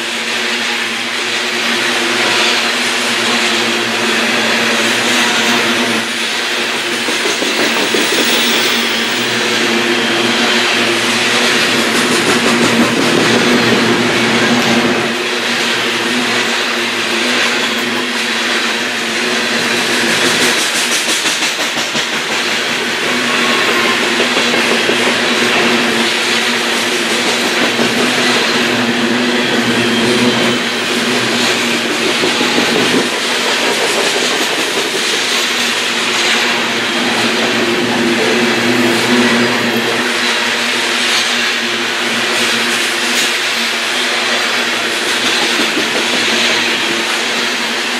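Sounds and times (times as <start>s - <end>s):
train wheels rushing on rails: 0.0s - 47.9s.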